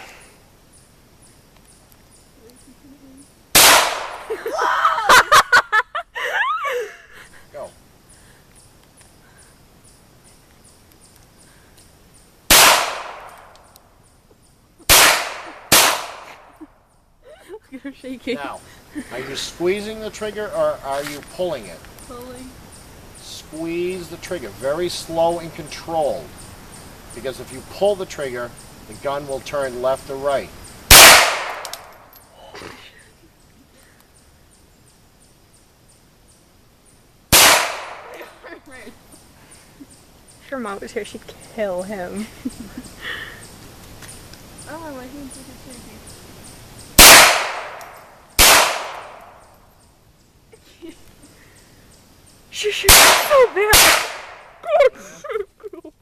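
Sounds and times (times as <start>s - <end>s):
pistol shots: 3.5s - 4.3s, 12.5s - 13.5s, 14.9s - 16.5s, 30.9s - 32.0s, 37.3s - 38.2s, 47.0s - 49.4s, 52.9s - 54.5s.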